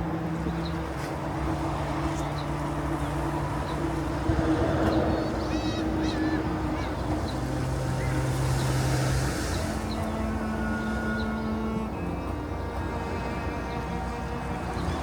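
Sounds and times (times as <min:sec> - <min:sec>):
boat engine humming: 0:00.0 - 0:15.0
wind and water noise: 0:00.0 - 0:15.0.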